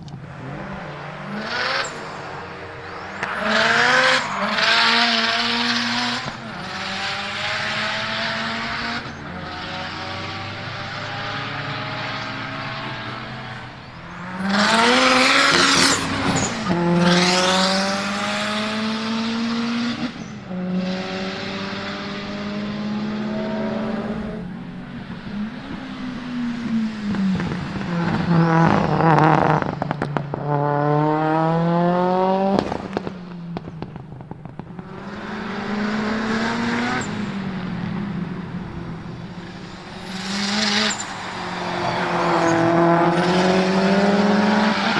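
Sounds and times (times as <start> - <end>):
cars passing by: 0.0 - 44.9
race car engines revving: 0.0 - 44.9
exhaust cracks: 23.2 - 31.0, 32.4 - 44.0.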